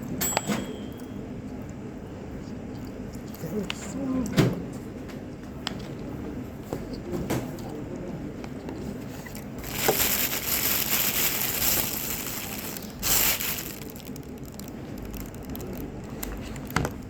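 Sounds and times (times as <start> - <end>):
chewing with small clicks: 2.4 - 3.9
food crunching: 9.3 - 17.0.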